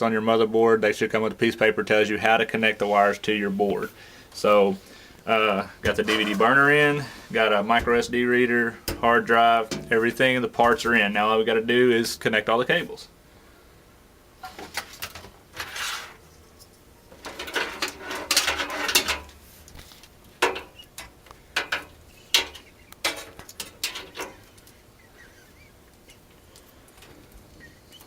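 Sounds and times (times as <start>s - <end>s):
plastic rustling: 4.7s - 8.5s.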